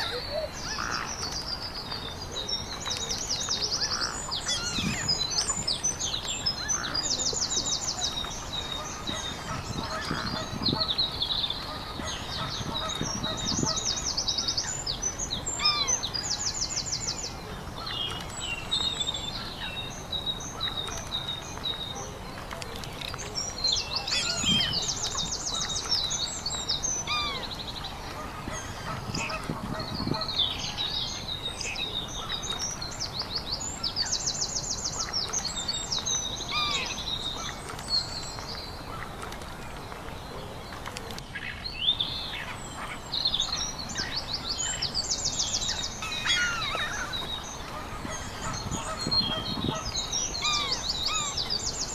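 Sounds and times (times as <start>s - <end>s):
birds chirping and trilling: 0.0s - 51.9s.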